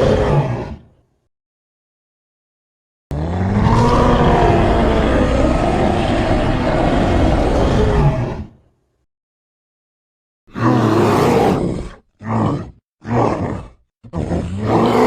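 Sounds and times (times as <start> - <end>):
monster roar: 3.1 - 8.6.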